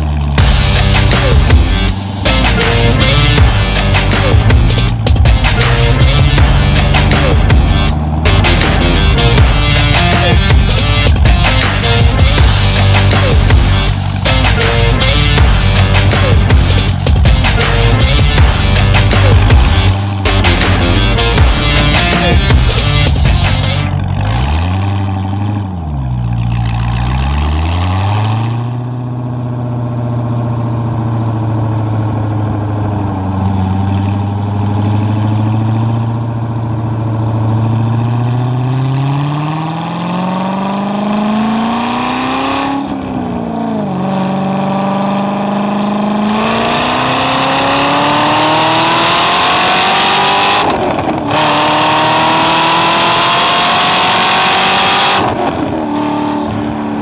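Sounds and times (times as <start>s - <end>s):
gear upshifts: 0.0s - 28.0s
sports car engine revving: 0.0s - 57.0s.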